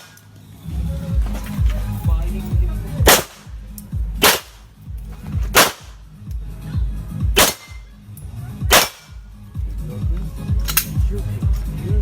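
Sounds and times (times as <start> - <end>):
background music with low beat: 0.0 - 12.0
pistol shots with echo: 3.0 - 3.6, 4.2 - 4.7, 5.5 - 6.0, 7.4 - 7.9, 8.7 - 9.2.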